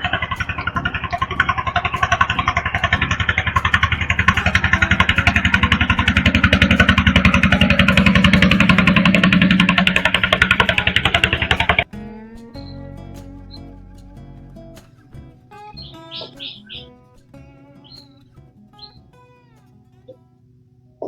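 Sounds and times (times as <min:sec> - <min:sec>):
small engine running: 0:00.0 - 0:11.9.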